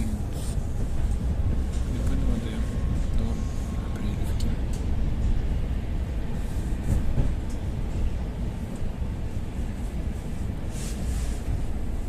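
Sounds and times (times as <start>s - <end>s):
train rumbling inside carriage: 0.0s - 12.0s.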